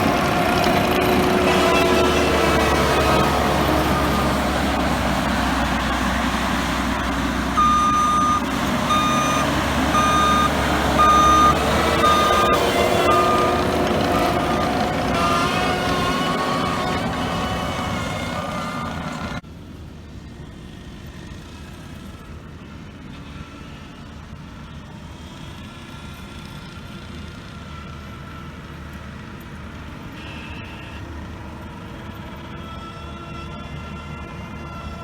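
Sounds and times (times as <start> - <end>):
skid steer engine running: 0.0 - 19.4
short beep: 7.6 - 13.6.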